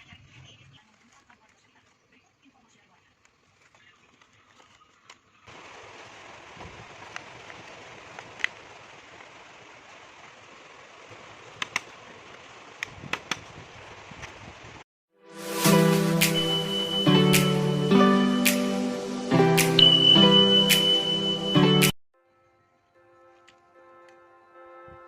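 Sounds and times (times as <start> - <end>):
music: 15.1 - 25.0.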